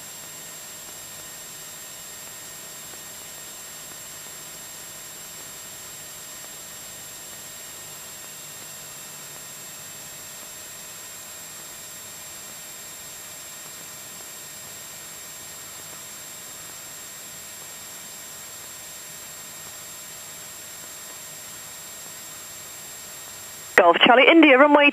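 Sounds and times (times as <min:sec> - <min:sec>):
headset intercom hiss: 0:23.8 - 0:24.9.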